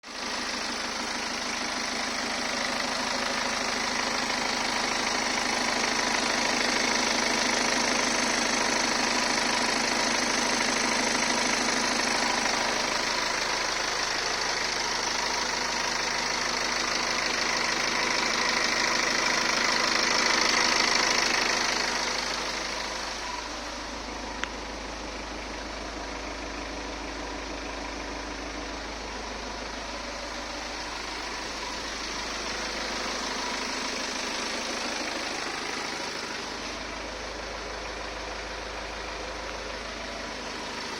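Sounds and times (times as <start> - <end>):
diesel engine rattling: 0.0 - 40.9.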